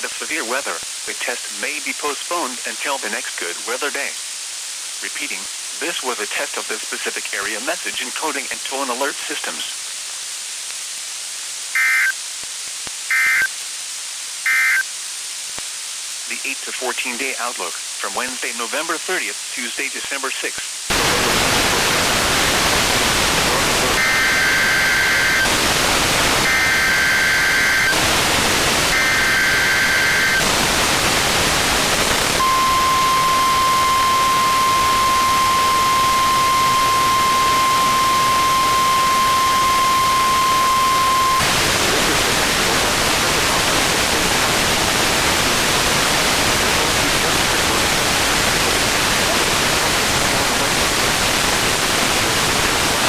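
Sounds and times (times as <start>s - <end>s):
radio static: 0.0s - 4.2s, 5.0s - 9.8s, 11.8s - 12.2s, 13.0s - 13.6s, 14.4s - 14.8s, 16.2s - 53.0s
steady warning alarm tone: 11.8s - 12.1s, 14.5s - 14.8s, 23.9s - 25.5s, 26.4s - 30.5s, 32.2s - 41.5s.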